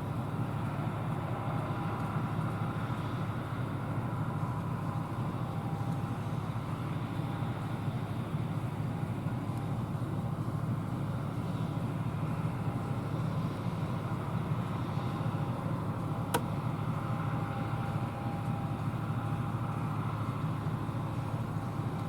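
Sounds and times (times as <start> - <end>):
combine harvester droning: 0.0 - 22.0.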